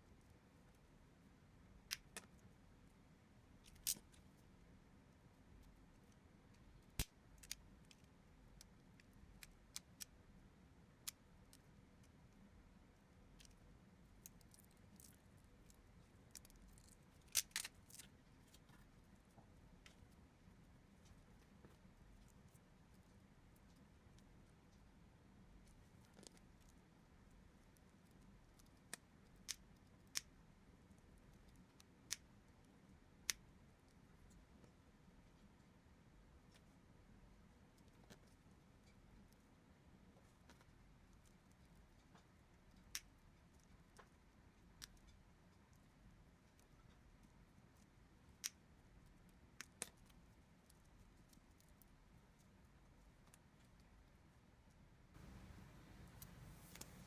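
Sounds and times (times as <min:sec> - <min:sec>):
faint hiss: 0:00.0 - 0:57.0
small sharp clicks and taps: 0:01.9 - 0:02.4, 0:05.6 - 0:10.2, 0:28.1 - 0:30.3, 0:48.4 - 0:48.6, 0:49.6 - 0:50.2.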